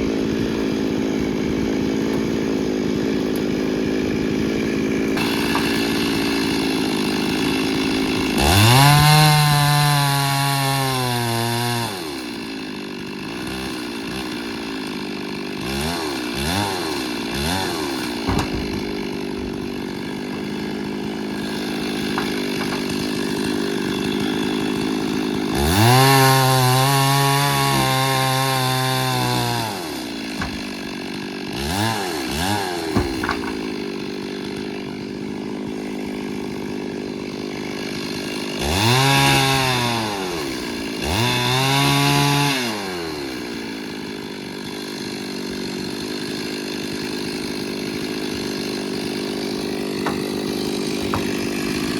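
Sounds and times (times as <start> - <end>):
chainsaw revving: 0.0 - 51.9.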